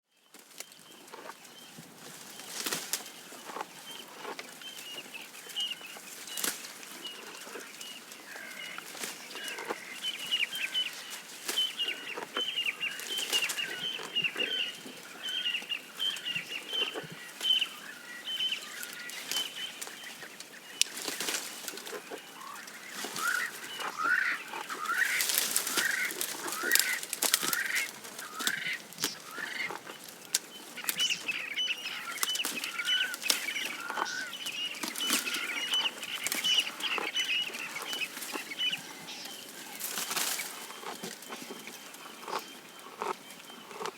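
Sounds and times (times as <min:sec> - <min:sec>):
birds chirping: 0:00.1 - 0:43.9
giraffe tearing and crunching grass: 0:05.5 - 0:09.9, 0:18.6 - 0:43.9.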